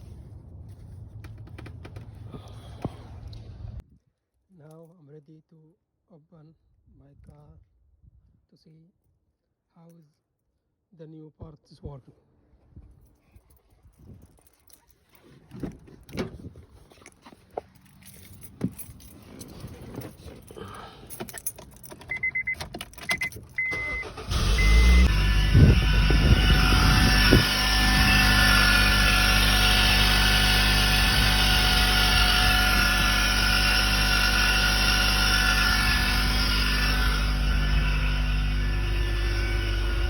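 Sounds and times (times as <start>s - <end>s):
car engine starting and idling: 21.4s - 40.0s
short beeps: 22.1s - 25.1s.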